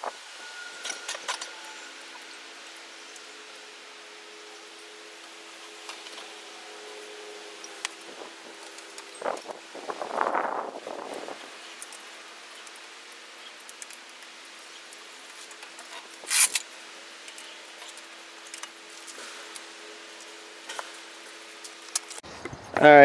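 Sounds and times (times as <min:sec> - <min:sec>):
faint clicks and handling noise: 0:08.6 - 0:22.6.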